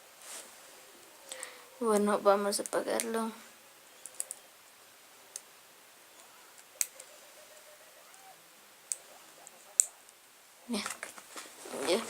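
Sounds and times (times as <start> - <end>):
handling noise: 8.9 - 12.0.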